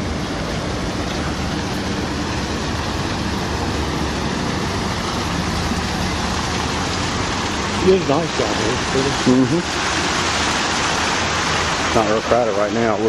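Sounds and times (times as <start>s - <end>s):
steady rushing noise: 0.0s - 13.0s.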